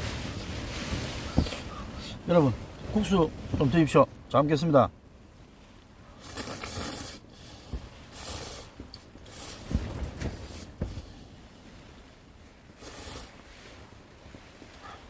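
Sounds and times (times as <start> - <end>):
dull low knocks: 0.9 - 4.3, 9.7 - 11.2
person slurping noodles: 6.2 - 7.2, 8.1 - 9.7, 12.8 - 13.4.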